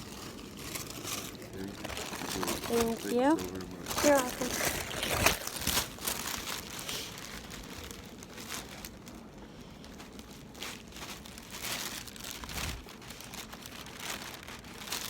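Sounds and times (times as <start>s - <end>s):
food bag crinkling: 0.0s - 15.0s.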